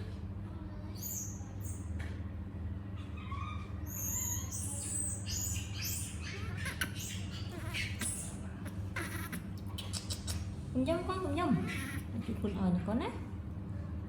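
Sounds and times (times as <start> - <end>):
steady low hum: 0.0 - 14.0
baby monkey squeaking: 1.0 - 1.8, 3.2 - 10.5, 11.5 - 12.1.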